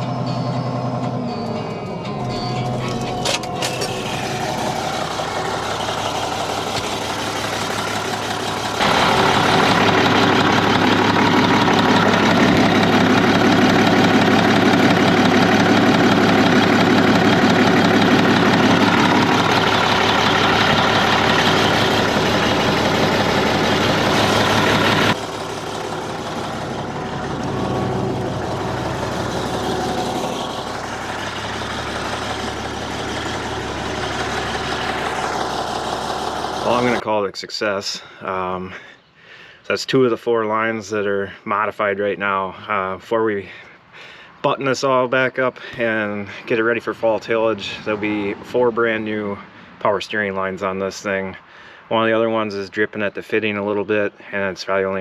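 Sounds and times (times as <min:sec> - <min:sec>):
tractor diesel engine running: 0:00.0 - 0:37.0.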